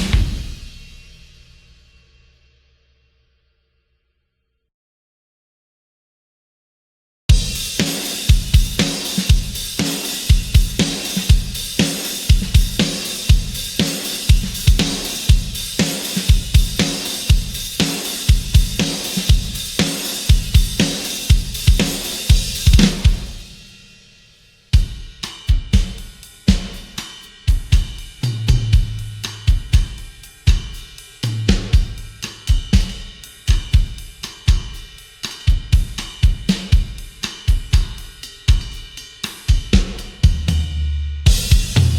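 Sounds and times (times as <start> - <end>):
rock drum kit groove: 0.0 - 2.2, 7.3 - 41.9.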